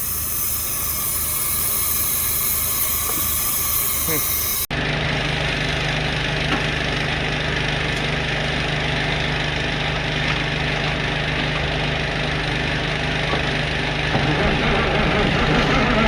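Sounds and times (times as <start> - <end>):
compressed air hissing: 0.0 - 4.7
diesel engine idling: 2.7 - 16.0.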